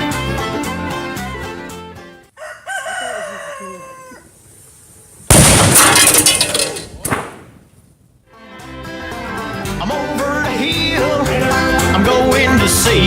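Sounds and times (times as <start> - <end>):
rooster crowing: 2.3 - 4.4
loud crash with clattering debris: 5.3 - 7.8.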